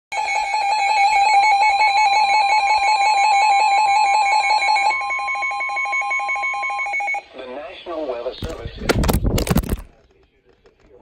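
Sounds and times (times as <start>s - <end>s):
two-tone alarm with pulsing flutter: 0.1s - 7.2s.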